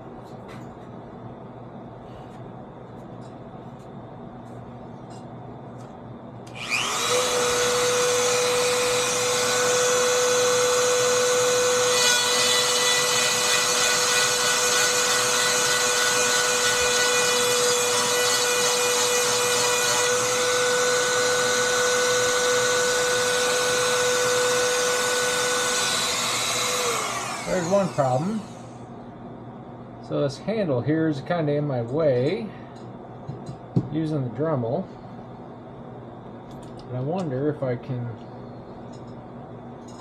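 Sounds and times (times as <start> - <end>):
rotary tool whining: 6.5 - 28.8.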